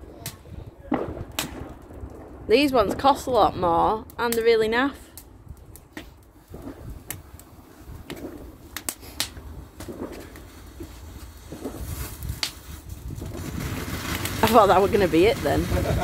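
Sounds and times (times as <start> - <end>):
bonfire crackling: 0.0 - 16.0.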